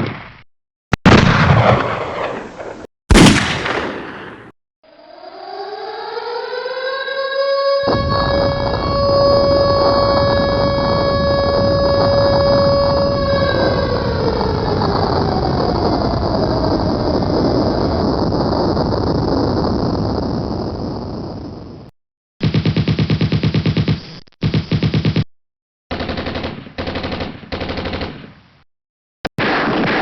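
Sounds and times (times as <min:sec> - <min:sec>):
air-raid siren wailing: 0:04.9 - 0:18.2
steady rumbling noise: 0:07.9 - 0:21.9.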